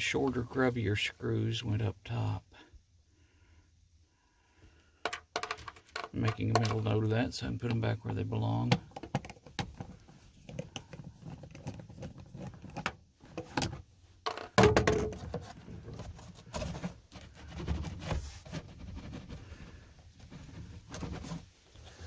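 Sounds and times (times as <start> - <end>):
thump and rustle: 8.8 - 19.4.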